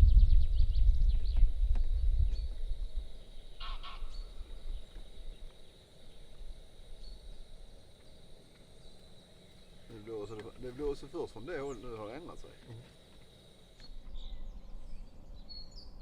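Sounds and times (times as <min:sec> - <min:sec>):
wind buffeting microphone: 0:00.0 - 0:05.5
goose-like bird honk: 0:03.6 - 0:04.2.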